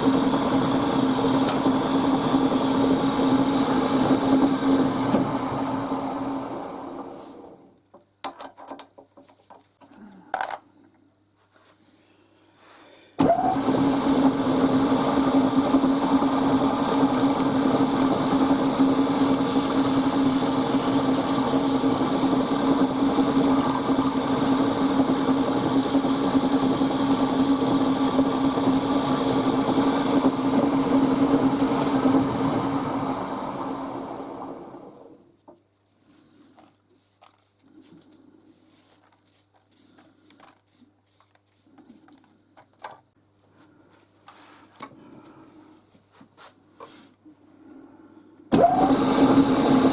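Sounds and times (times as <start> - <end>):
workshop machine humming: 0.0 - 7.7, 13.2 - 35.3, 48.5 - 49.9.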